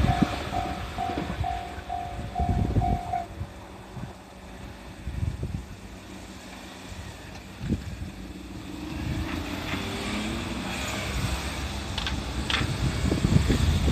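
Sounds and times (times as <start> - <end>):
low rumble: 0.0 - 5.8
vehicle engine approaching: 0.0 - 13.9.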